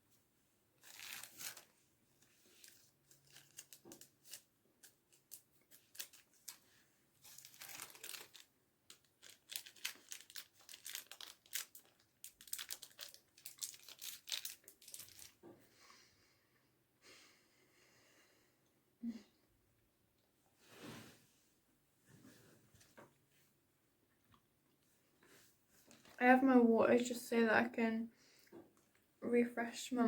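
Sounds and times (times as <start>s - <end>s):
candy wrapper crinkling: 0.8s - 15.4s.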